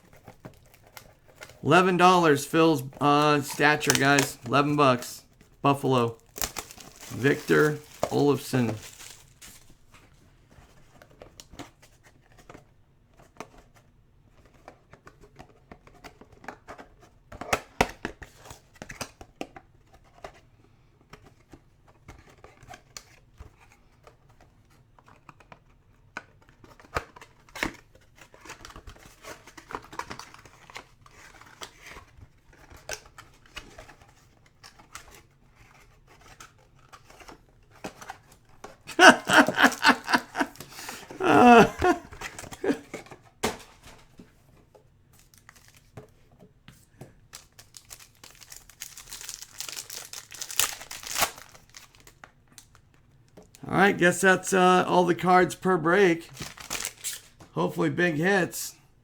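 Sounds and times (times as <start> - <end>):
wrappers crinkling and tearing: 2.8 - 4.8, 5.8 - 9.8, 39.0 - 42.0, 47.3 - 52.7, 56.3 - 57.3.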